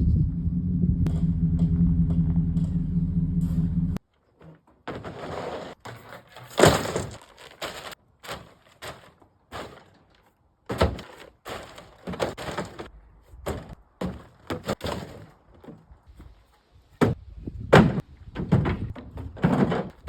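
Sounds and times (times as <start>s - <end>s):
wooden boards clattering: 4.3s - 16.4s, 17.0s - 20.0s.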